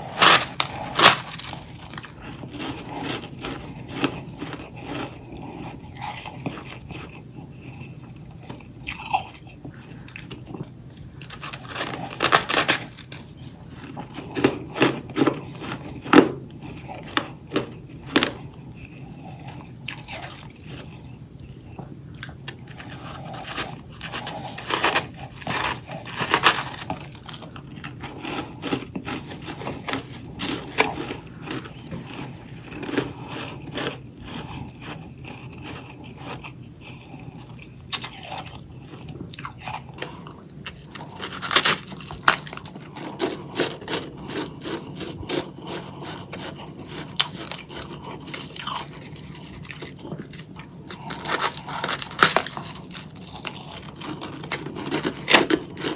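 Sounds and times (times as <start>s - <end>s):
crunching and chewing frost: 0.0s - 55.9s.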